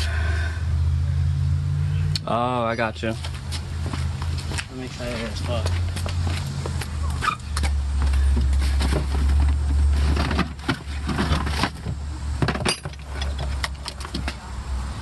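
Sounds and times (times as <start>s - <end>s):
metal tools clinking: 12.6s - 14.3s.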